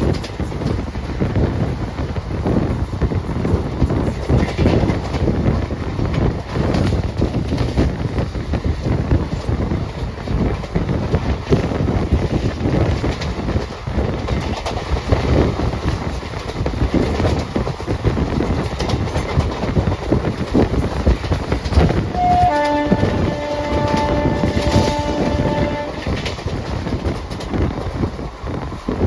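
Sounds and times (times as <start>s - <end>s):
train rumble and wheel clatter: 0.0s - 29.0s
train horn chord: 22.1s - 26.5s
short note: 22.2s - 26.2s.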